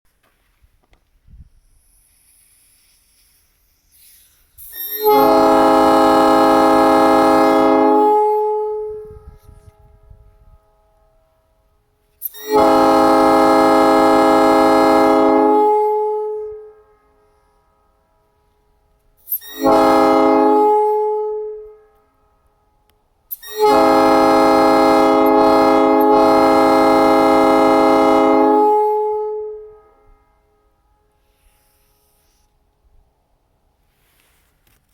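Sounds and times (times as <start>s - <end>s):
air train horn chord: 4.9s - 22.8s, 23.4s - 31.8s.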